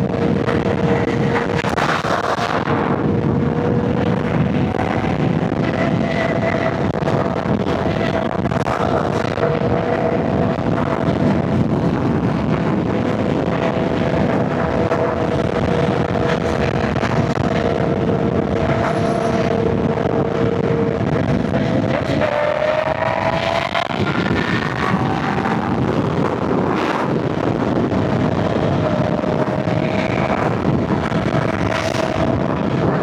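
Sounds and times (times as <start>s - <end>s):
motorcycle engine droning: 0.0s - 33.0s
road and wind noise: 0.0s - 33.0s.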